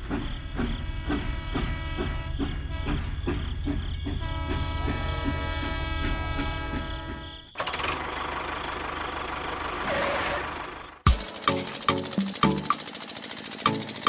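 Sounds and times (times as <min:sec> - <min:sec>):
small motor knocking: 0:11.0 - 0:14.0.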